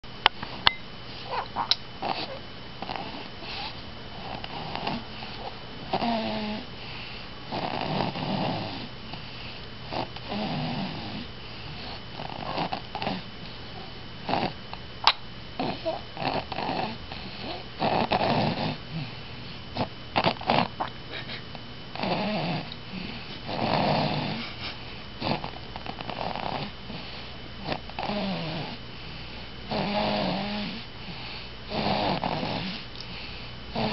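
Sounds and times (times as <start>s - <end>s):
snoring: 2.0s - 6.7s, 7.5s - 8.9s, 9.9s - 13.2s, 14.2s - 14.6s, 15.6s - 19.1s, 19.8s - 20.7s, 21.9s - 24.4s, 25.2s - 28.8s, 29.7s - 30.9s, 31.7s - 32.8s.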